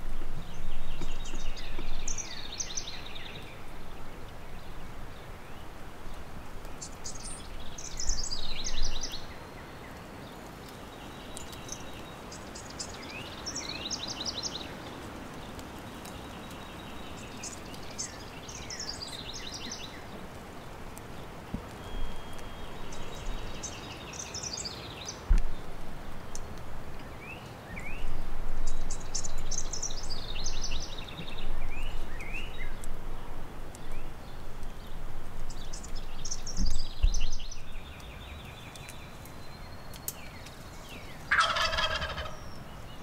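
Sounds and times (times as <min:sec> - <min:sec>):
turkey gobbling: 0:41.3 - 0:42.5.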